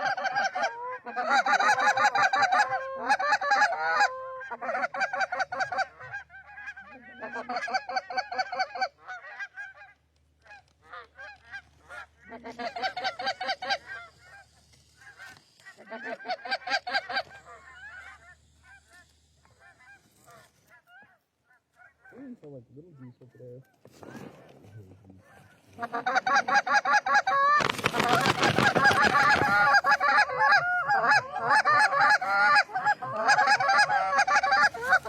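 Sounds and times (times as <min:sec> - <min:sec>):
geese honking: 0:00.0 - 0:35.0.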